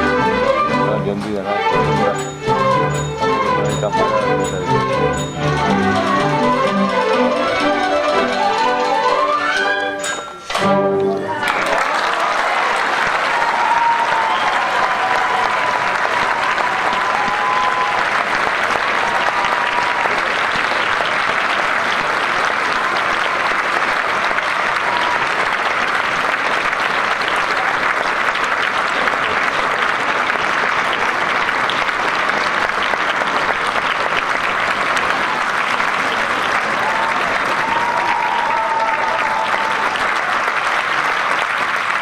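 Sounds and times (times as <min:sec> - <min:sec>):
audience applauding: 0:11.0 - 0:42.0.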